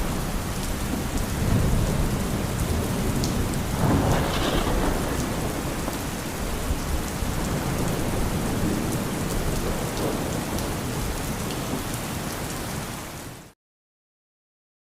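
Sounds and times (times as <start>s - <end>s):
low rumble of thunder: 0.0s - 11.8s
steady rain falling: 0.0s - 13.6s.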